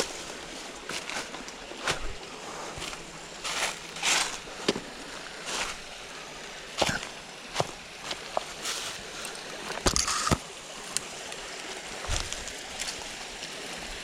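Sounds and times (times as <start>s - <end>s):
stream running: 0.0s - 14.0s
water splashing in creek: 0.0s - 14.0s.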